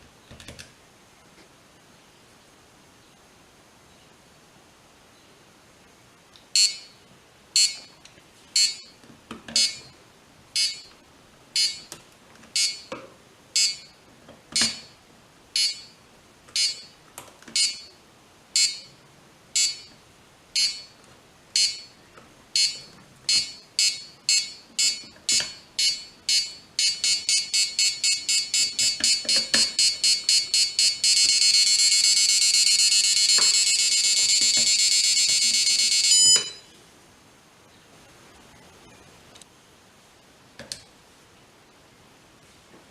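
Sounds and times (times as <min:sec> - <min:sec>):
continuous high tone: 0:06.5 - 0:36.8
piezo buzzer beeping: 0:06.6 - 0:07.0, 0:07.6 - 0:07.9, 0:08.6 - 0:10.0, 0:10.6 - 0:10.9, 0:11.6 - 0:11.9, 0:12.5 - 0:12.9, 0:13.6 - 0:14.0, 0:15.6 - 0:16.0, 0:16.6 - 0:17.0, 0:17.6 - 0:17.9, 0:18.6 - 0:19.0, 0:19.6 - 0:19.9, 0:20.6 - 0:21.0, 0:21.6 - 0:22.0, 0:22.6 - 0:36.7.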